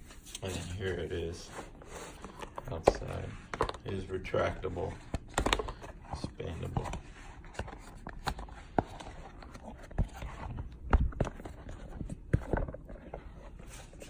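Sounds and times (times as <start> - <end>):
knocks and thumps of silicone: 5.1 - 13.2.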